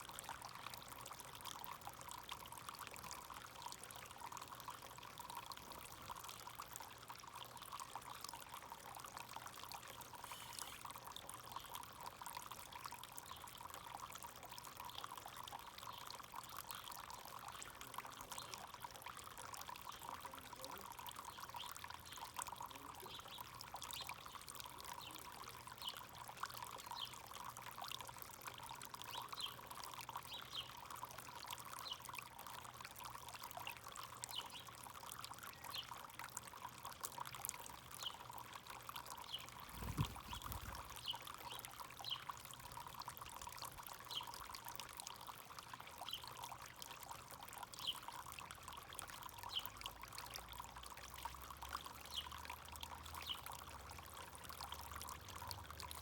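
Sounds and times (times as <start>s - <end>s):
fountain water trickling: 0.0s - 56.0s
faint bird chirps: 10.2s - 10.9s, 39.2s - 42.2s.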